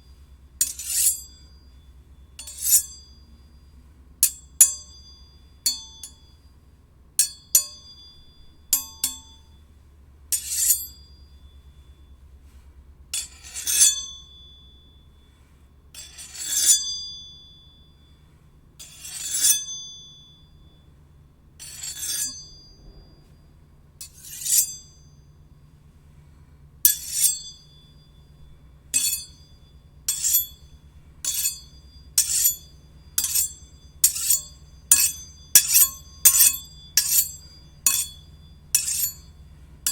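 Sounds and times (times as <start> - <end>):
steel blades clinking: 0.6 - 1.6, 2.4 - 3.5, 7.2 - 9.5, 10.3 - 11.9, 16.0 - 17.5, 18.8 - 20.8, 21.6 - 23.2, 24.0 - 25.3, 26.8 - 39.9
steel blades scraping and ringing: 0.6 - 6.5, 7.2 - 9.7, 10.3 - 12.2, 13.2 - 15.4, 16.0 - 21.0, 21.6 - 25.8, 26.8 - 39.9.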